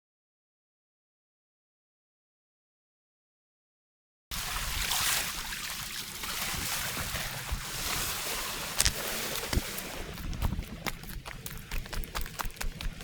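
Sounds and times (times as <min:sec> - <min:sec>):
sea waves washing on shore: 0:04.3 - 0:13.0
wind noise: 0:06.3 - 0:13.0.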